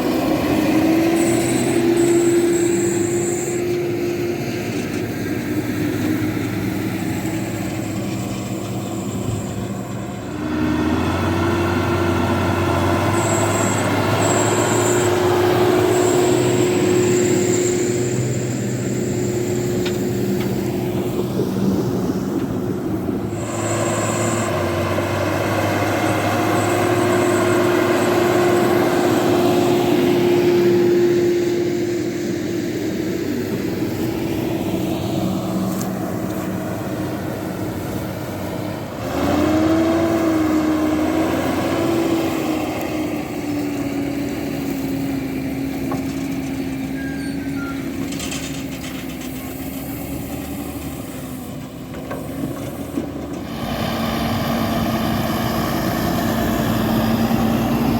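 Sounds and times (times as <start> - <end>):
tractor diesel engine running: 0.0 - 57.9.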